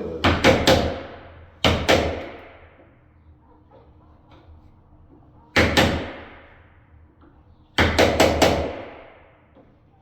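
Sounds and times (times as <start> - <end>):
hammer blows on a door: 0.2 - 2.6, 5.6 - 6.3, 7.8 - 9.2.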